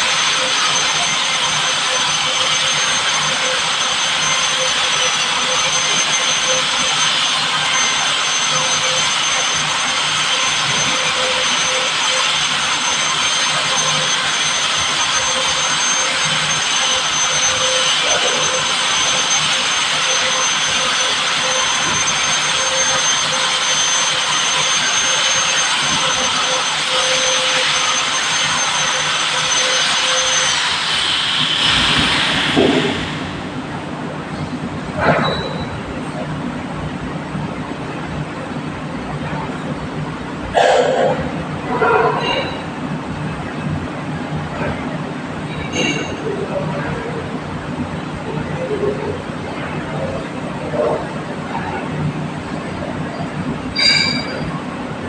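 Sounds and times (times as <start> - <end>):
milling machine running: 0.0 - 35.8
thin high whine: 0.0 - 36.3, 40.5 - 42.8, 44.5 - 55.0.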